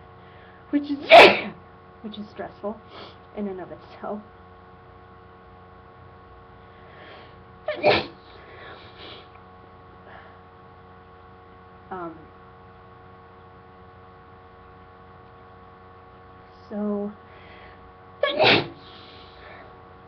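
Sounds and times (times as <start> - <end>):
breathing: 0.2 - 0.7, 2.9 - 3.3, 6.6 - 7.4, 8.2 - 9.4, 10.0 - 10.5, 17.3 - 17.9, 18.8 - 19.8
person sneezing: 1.1 - 1.6, 7.7 - 9.3, 18.2 - 19.3.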